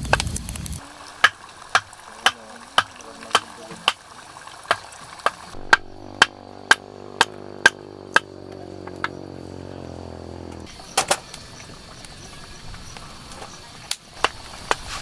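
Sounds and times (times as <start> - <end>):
steady low hum: 5.5 - 10.7.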